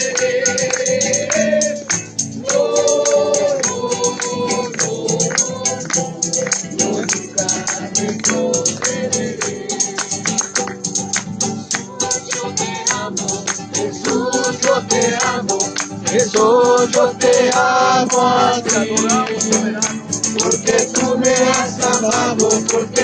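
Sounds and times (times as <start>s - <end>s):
people singing: 0.0s - 11.0s, 11.7s - 23.0s
instrumental accompaniment: 0.0s - 23.0s
tambourine beating quickly: 0.0s - 23.0s.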